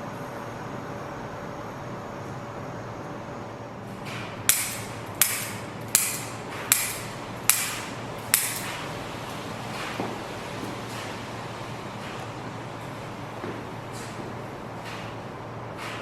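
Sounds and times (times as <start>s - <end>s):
sharp ringing clicks: 4.5s - 8.7s.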